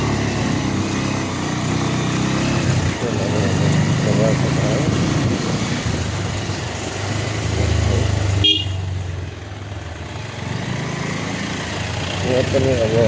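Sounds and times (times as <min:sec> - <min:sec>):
motorcycle engine running: 0:00.0 - 0:13.0
motorcycle horn toot: 0:08.4 - 0:08.9.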